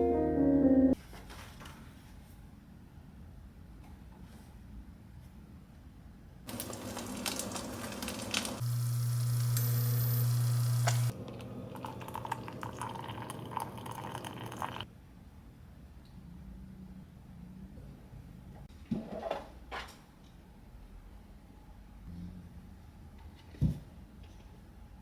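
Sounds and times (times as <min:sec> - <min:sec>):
small electric machine humming: 0:06.5 - 0:14.0
liquid noise: 0:06.5 - 0:14.8.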